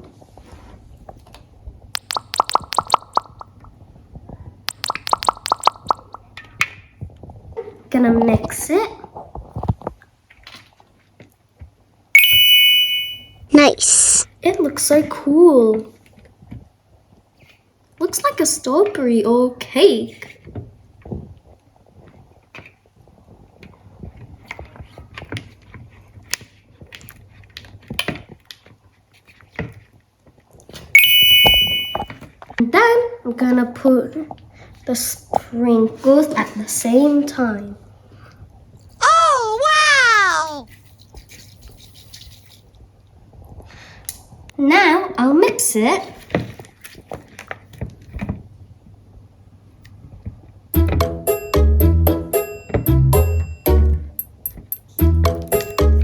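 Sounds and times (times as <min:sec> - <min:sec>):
squeeze bottle clicking pops: 0:02.0 - 0:03.4, 0:04.7 - 0:06.1.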